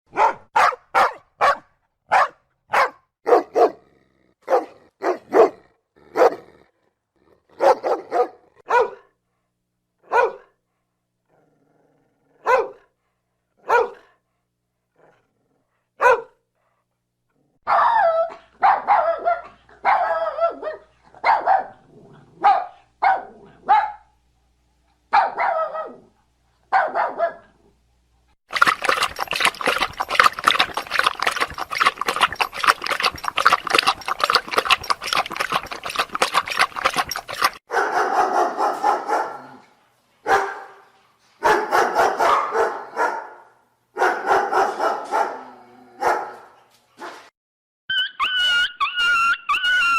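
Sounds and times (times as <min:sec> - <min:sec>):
dog barking: 0:00.1 - 0:03.8, 0:04.4 - 0:06.4, 0:07.6 - 0:09.2, 0:10.0 - 0:10.6, 0:12.4 - 0:12.9, 0:13.6 - 0:14.2, 0:16.0 - 0:16.4, 0:17.7 - 0:21.8, 0:22.4 - 0:24.1, 0:25.1 - 0:26.1, 0:26.7 - 0:27.6, 0:28.6 - 0:39.6, 0:40.2 - 0:47.3.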